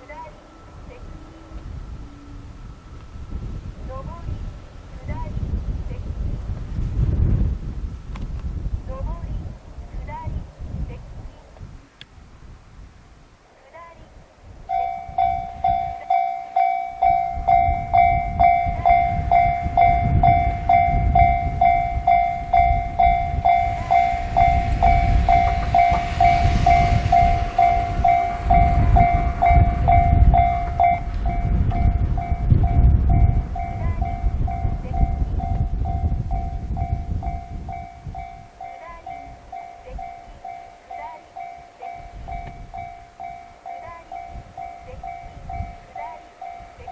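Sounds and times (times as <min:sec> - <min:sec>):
train passing: 0:00.0 - 0:05.3, 0:14.1 - 0:46.9
wind buffeting microphone: 0:00.0 - 0:46.9
crossing alarm bell dinging: 0:14.7 - 0:46.9.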